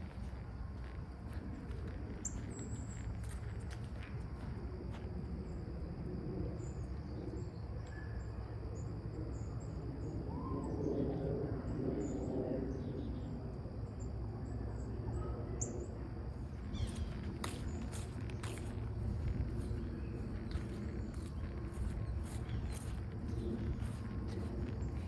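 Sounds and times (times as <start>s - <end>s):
footsteps on trail: 0.0s - 5.2s, 16.5s - 25.0s
low outdoor noise: 0.0s - 25.0s
small birds chirping: 16.6s - 25.0s.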